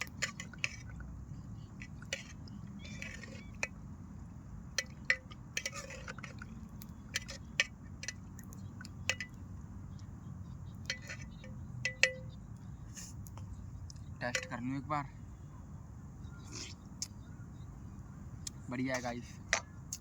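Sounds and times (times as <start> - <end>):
metal spoon clinking on pot: 4.7 - 6.4, 7.1 - 9.4, 10.8 - 12.4, 14.2 - 14.8
pasta stirred in water: 4.8 - 9.3.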